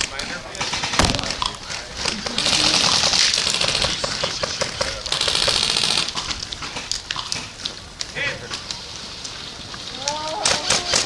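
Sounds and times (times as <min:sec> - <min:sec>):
airsoft gun automatic bursts: 0:00.0 - 0:07.6.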